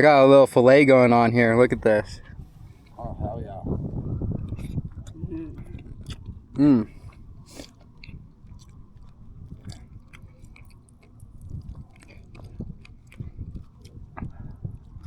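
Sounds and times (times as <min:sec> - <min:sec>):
person chewing: 0:04.3 - 0:15.0
mouth clicks and smacks: 0:04.4 - 0:15.0.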